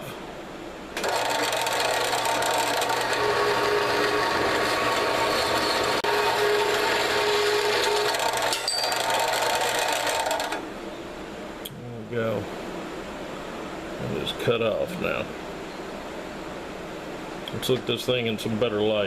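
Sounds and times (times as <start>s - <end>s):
bandsaw cutting steel pipe: 1.0s - 10.6s.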